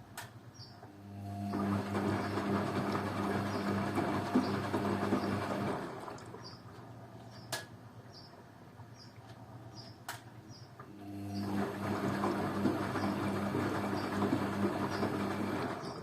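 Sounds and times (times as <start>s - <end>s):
washing machine motor hum: 0.8s - 7.2s, 10.7s - 16.0s.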